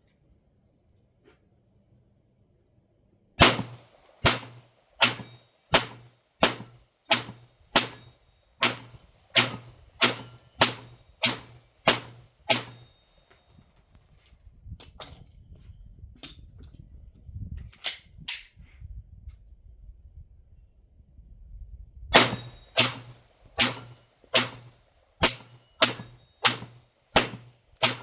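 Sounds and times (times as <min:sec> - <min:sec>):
pistol shots: 0:03.4 - 0:12.9, 0:22.2 - 0:28.0.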